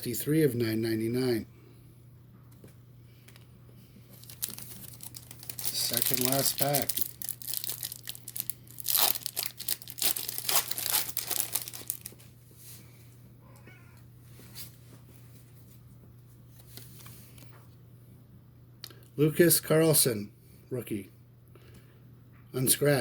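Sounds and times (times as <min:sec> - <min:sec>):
soft handling of cards: 0:02.5 - 0:12.8, 0:14.4 - 0:17.8
plastic wrapper tearing and crinkling: 0:04.1 - 0:12.2.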